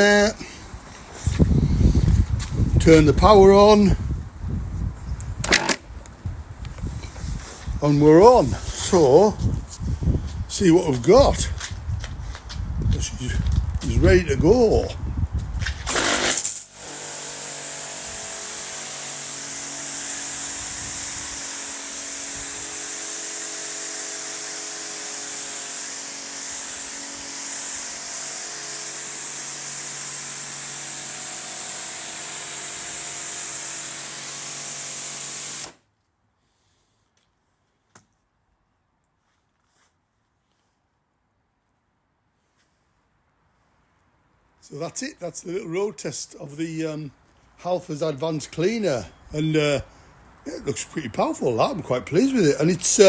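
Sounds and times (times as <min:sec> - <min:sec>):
pressure washer water jet hissing: 0:15.9 - 0:35.8
pump motor hum: 0:15.9 - 0:35.8.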